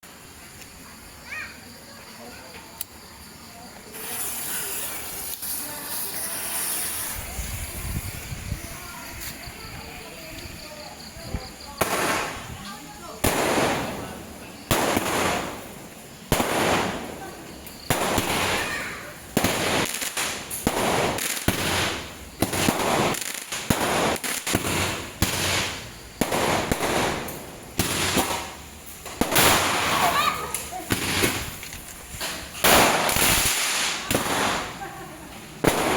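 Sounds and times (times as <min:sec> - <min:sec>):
roman candle hissing and sputtering: 0:03.0 - 0:35.6
firework pops: 0:03.9 - 0:07.4, 0:11.3 - 0:35.9
hissing whoosh: 0:03.9 - 0:09.7.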